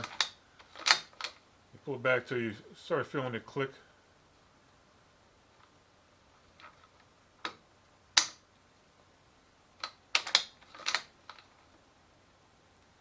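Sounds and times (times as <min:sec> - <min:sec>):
rifle action clicks and clacks: 0:09.8 - 0:11.4.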